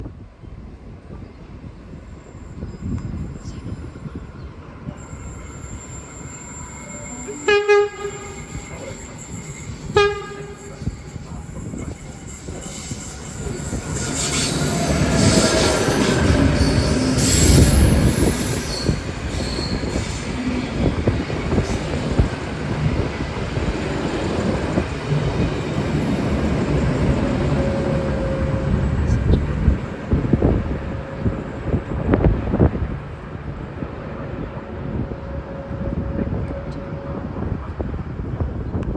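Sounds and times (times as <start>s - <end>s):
train running noise: 0.0s - 38.9s
high squealing from train: 1.0s - 33.6s
train horn blasts: 6.1s - 9.0s, 9.7s - 11.2s, 34.8s - 38.0s.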